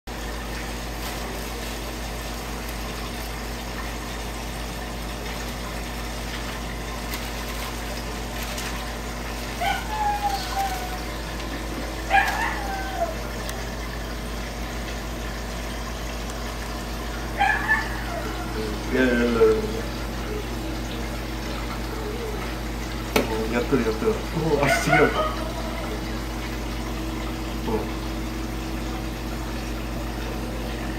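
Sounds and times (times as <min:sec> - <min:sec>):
aquarium pump humming: 0:00.1 - 0:30.9
rushing water: 0:00.1 - 0:30.9
voice-like falling calls: 0:09.2 - 0:14.0, 0:17.2 - 0:23.6, 0:24.2 - 0:28.2.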